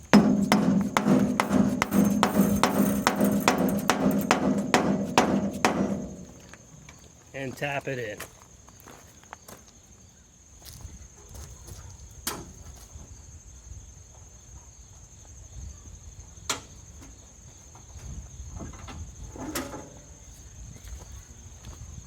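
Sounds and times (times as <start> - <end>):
sharp knocks: 0.0 - 6.7.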